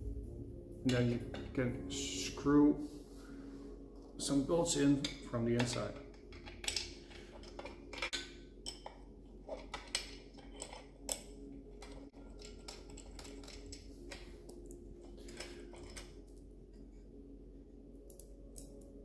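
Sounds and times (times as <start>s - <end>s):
steady low hum: 0.0s - 19.0s
metal bolts clinking: 4.9s - 16.4s.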